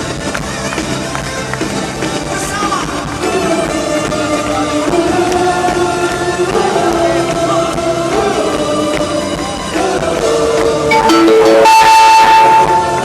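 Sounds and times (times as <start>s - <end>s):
worship band music: 3.1s - 13.0s.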